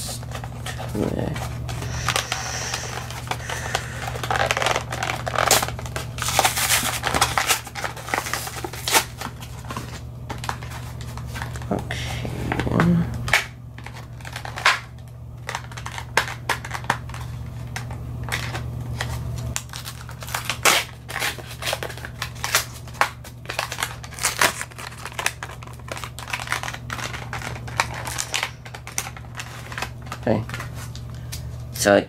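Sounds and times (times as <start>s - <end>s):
toy packaging being torn open: 1.8s - 11.8s, 13.3s - 17.3s, 19.6s - 30.7s.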